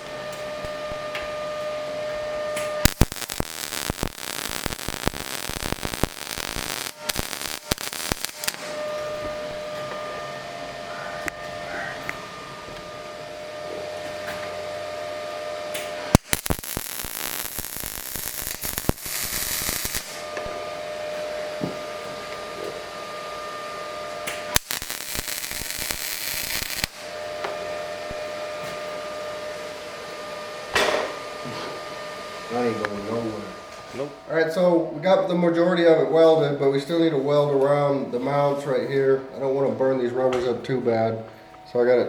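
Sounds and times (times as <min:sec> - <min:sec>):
crackling welding arc: 0:02.6 - 0:09.8, 0:15.7 - 0:21.5, 0:24.0 - 0:29.7.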